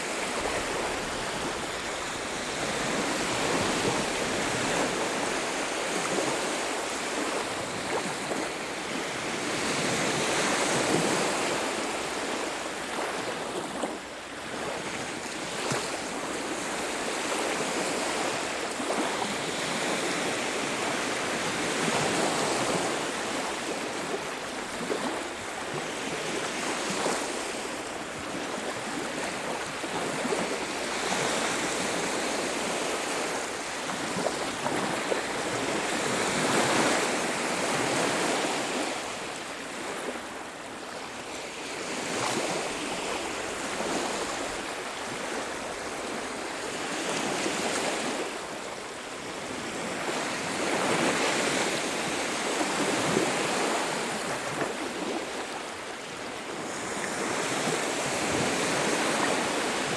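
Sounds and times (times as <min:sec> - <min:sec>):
waves breaking on beach: 0:00.0 - 0:59.9.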